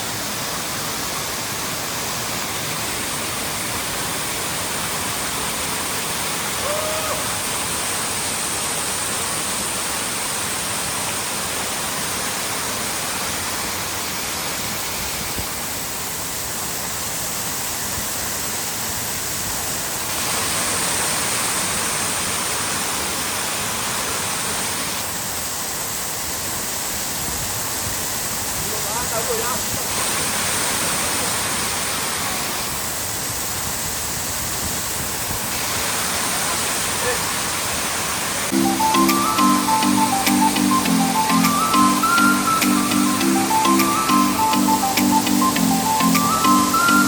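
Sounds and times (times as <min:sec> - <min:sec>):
waterfall rushing: 0:00.0 - 0:17.5, 0:35.5 - 0:47.0.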